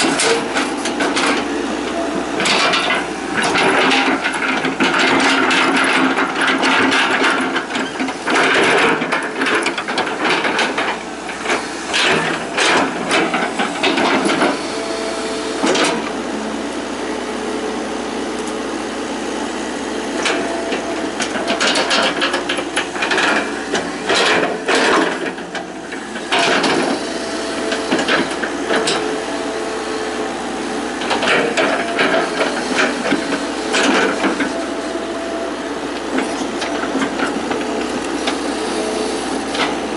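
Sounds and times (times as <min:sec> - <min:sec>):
excavator hydraulic noise: 0:00.0 - 0:39.9.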